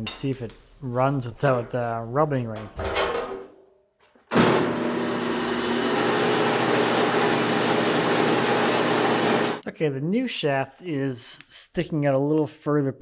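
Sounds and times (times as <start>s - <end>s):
thickness planer whirring: 4.3s - 9.6s.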